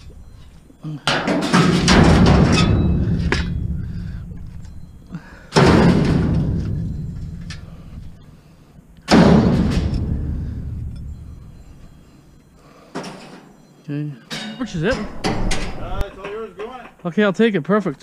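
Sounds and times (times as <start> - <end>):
scrap metal crashing into truck bed: 1.1 - 4.0, 5.5 - 6.9.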